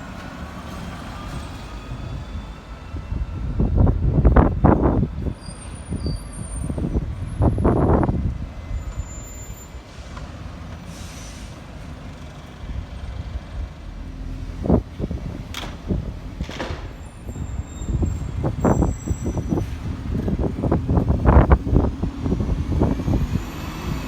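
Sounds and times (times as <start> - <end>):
bus engine running: 6.4 - 24.0
air brakes hissing: 8.8 - 11.9, 17.0 - 21.4.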